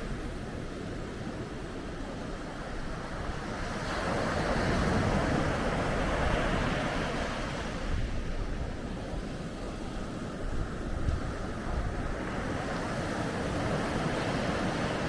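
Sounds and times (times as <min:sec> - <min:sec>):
ocean waves breaking on beach: 0:00.0 - 0:15.0
wind on microphone: 0:04.6 - 0:15.0.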